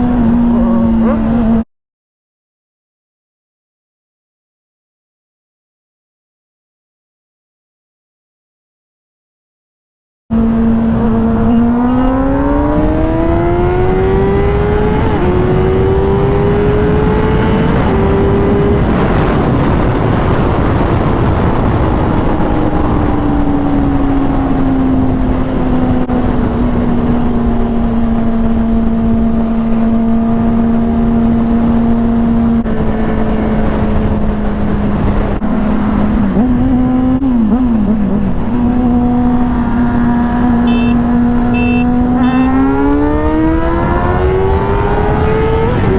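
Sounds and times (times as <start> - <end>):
motorcycle engine shifting gears: 10.3 - 45.9
wind noise: 10.4 - 45.9.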